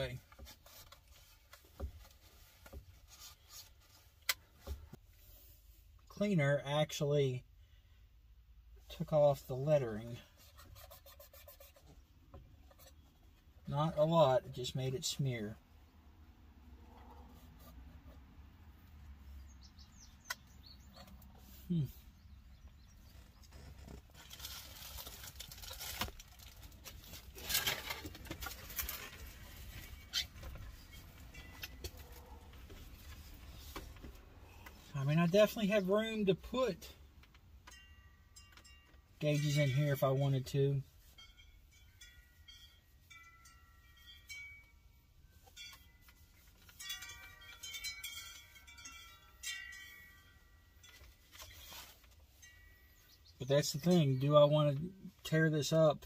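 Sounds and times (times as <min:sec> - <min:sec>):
metallic chimes ringing: 0:37.7 - 0:40.3, 0:41.0 - 0:51.3, 0:52.3 - 0:54.2.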